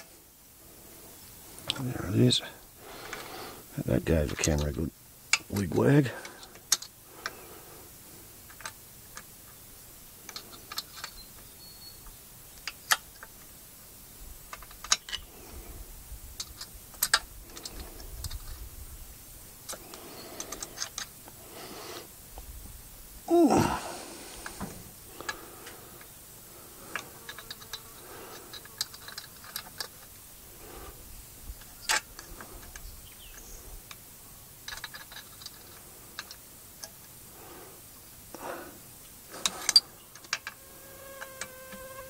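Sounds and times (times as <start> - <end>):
metallic clicks of hand tools: 6.2 - 7.4, 16.4 - 18.4, 34.7 - 37.1, 39.4 - 40.6.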